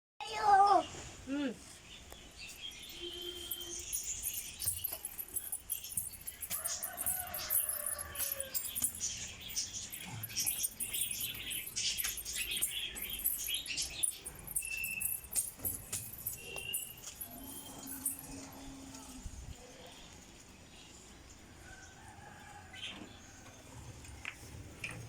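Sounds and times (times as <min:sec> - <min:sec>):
birds chirping and squeaking: 0:01.8 - 0:19.2.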